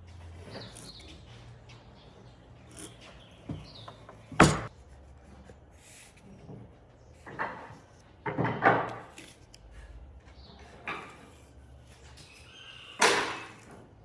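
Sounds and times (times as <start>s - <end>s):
wood knocking in workshop: 3.5s - 4.7s, 6.5s - 9.0s.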